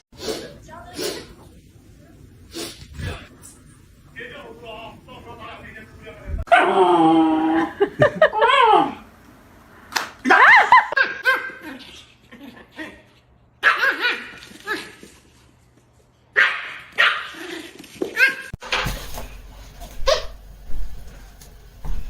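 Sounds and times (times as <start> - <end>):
dog barking and yipping: 13.6 - 14.9, 16.4 - 17.4, 19.9 - 20.4.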